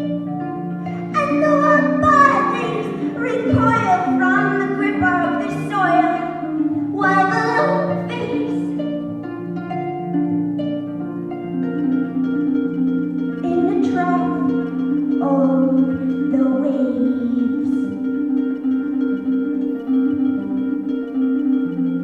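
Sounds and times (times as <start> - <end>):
harp playing plucked notes: 0.0 - 22.0
woman singing long sliding notes: 0.9 - 8.8, 15.2 - 18.1.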